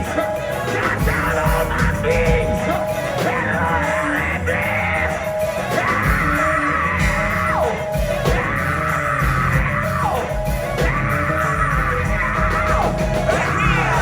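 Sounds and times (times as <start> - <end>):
bass and drums: 0.0 - 14.0
gospel choir singing: 0.0 - 14.0.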